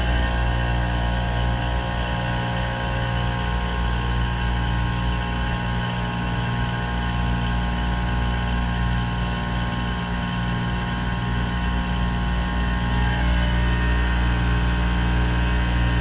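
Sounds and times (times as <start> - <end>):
heat pump humming: 0.0 - 4.6, 12.4 - 16.0.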